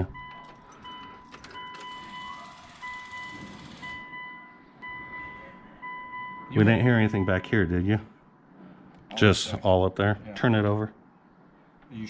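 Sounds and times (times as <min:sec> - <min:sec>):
car warning chime beeping: 0:00.0 - 0:07.7.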